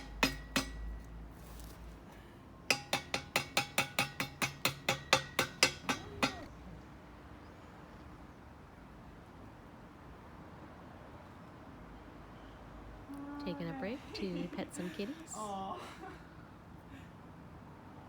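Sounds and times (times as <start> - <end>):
hammer striking metal: 0.0 - 1.2, 2.7 - 6.5.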